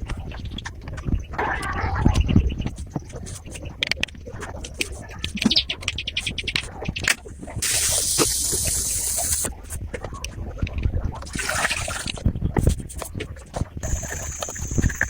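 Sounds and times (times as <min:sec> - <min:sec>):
hissing: 0:07.6 - 0:09.5, 0:13.8 - 0:15.0.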